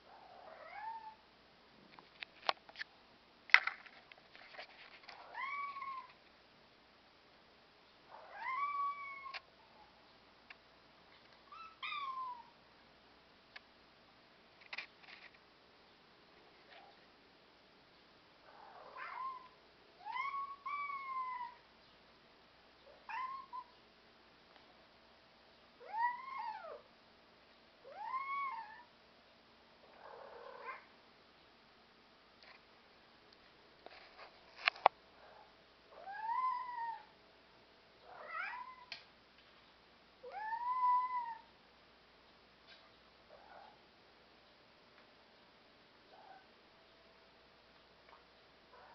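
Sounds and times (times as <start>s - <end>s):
cat meowing: 8.1s - 9.4s, 18.8s - 21.6s, 23.1s - 23.7s, 27.9s - 28.9s, 38.1s - 38.9s, 40.2s - 41.5s.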